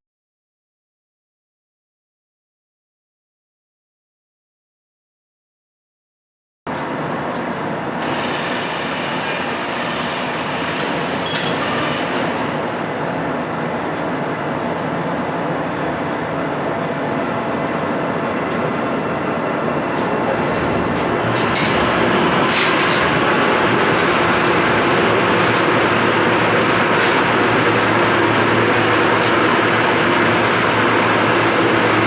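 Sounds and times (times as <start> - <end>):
metalworking machine running: 6.7 - 13.4, 17.1 - 32.0
sharp machine clatter: 9.1 - 12.6, 19.9 - 31.1.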